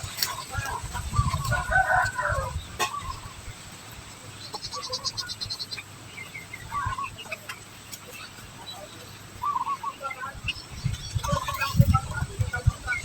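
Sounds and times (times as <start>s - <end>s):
small birds chirping: 0.0s - 13.0s
high ticking bird calls: 4.2s - 13.0s.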